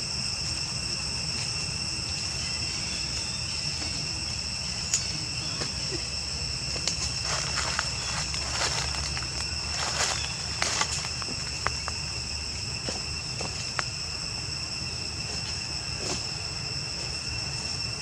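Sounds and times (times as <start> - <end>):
shrill insect chorus: 0.0 - 18.0
rustles: 6.7 - 14.0.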